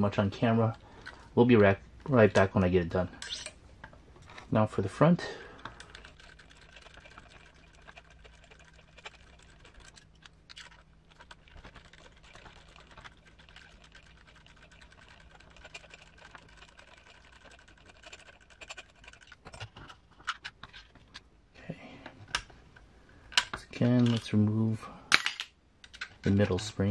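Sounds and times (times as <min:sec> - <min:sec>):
small tools and metal parts clicking: 0:05.6 - 0:21.3.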